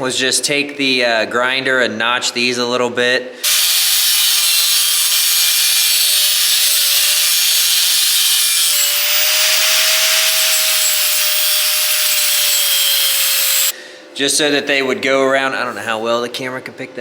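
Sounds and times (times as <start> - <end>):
angle grinder grinding steel: 3.4 - 13.8
whining tone: 3.5 - 13.7.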